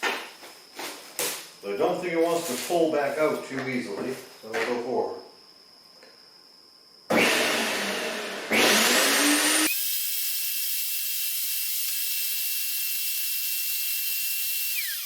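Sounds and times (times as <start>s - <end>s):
wood chipper motor whining: 7.1s - 15.0s.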